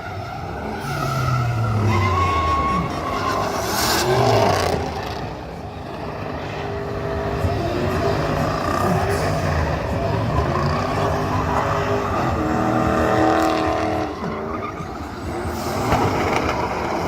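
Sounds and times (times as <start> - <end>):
car engine revving: 0.0 - 17.0.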